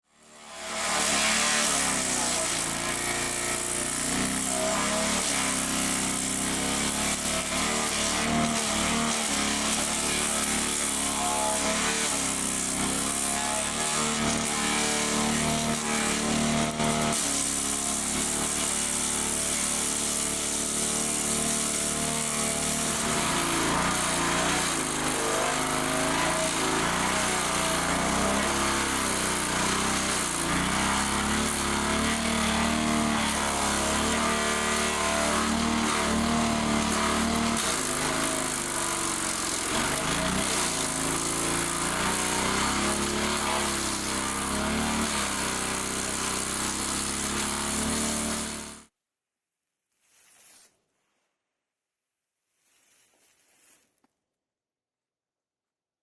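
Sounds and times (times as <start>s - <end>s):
wood chipper engine running: 0.1s - 48.9s.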